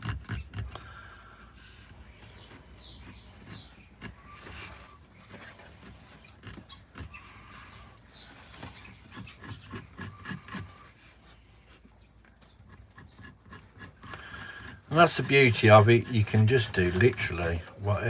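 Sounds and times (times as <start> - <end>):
drawing strokes scratching on wood: 0.0 - 11.9, 12.5 - 18.0.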